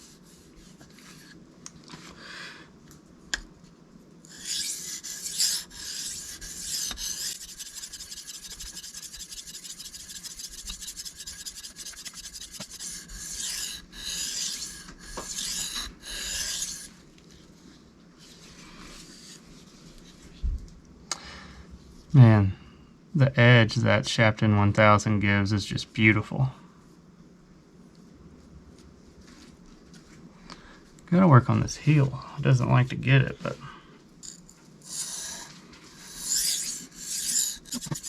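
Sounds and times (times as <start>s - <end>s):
blade scraping on whetstone: 4.3s - 16.9s, 34.3s - 38.0s.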